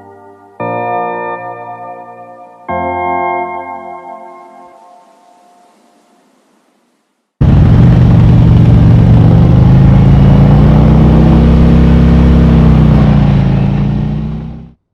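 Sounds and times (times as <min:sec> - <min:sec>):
motorcycle engine running: 0:07.4 - 0:14.8.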